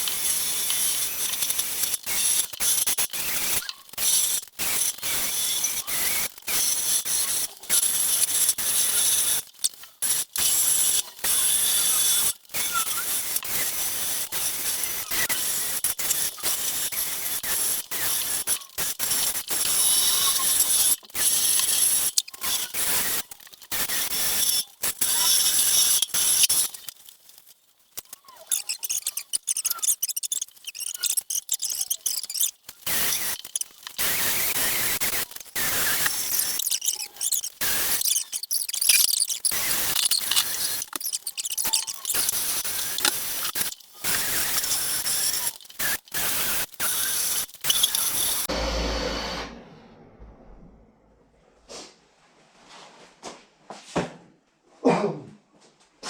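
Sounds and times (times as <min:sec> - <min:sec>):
handheld power tool running: 0:32.8 - 0:49.6.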